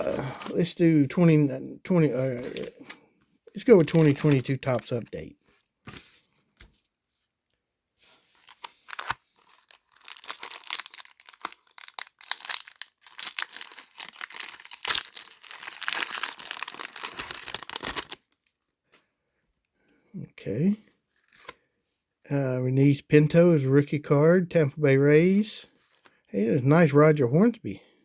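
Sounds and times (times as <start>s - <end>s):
wrapper tearing and crinkling: 0.0s - 0.7s, 2.4s - 2.9s, 3.5s - 5.1s, 8.3s - 18.3s.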